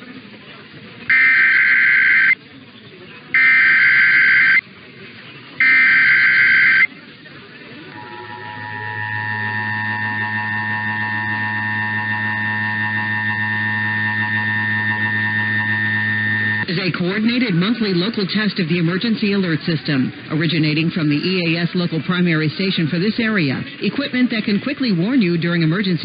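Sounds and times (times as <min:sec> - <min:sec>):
two-tone attention signal: 0:01.1 - 0:02.4, 0:03.4 - 0:04.6, 0:05.6 - 0:06.9, 0:08.0 - 0:16.7.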